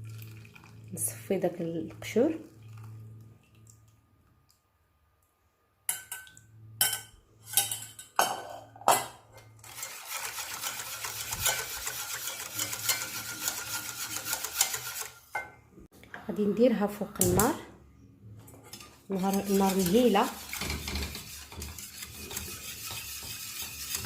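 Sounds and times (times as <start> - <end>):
utensil scraping saucepan stirring: 9.4 - 15.4, 18.5 - 24.0
utensils knocking against pot: 18.7 - 24.0.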